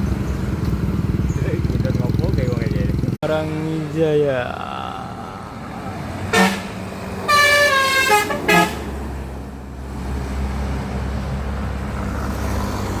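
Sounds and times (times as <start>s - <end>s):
low bus engine rumble: 4.3s - 13.0s
musical bus air horn: 6.3s - 8.9s.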